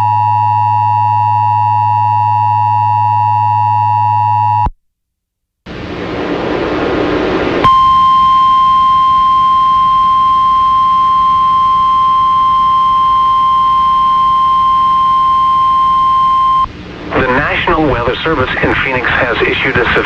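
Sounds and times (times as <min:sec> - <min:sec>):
steady single-pitch alert tone: 0:07.6 - 0:17.6
radio static hiss: 0:16.6 - 0:20.0.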